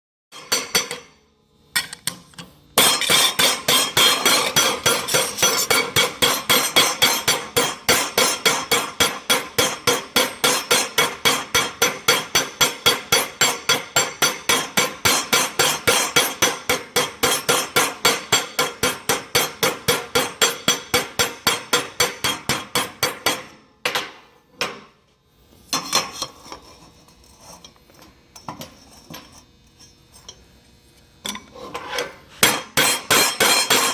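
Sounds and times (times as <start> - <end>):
hammer striking metal: 0.3 - 1.2, 2.8 - 25.0, 32.4 - 33.9.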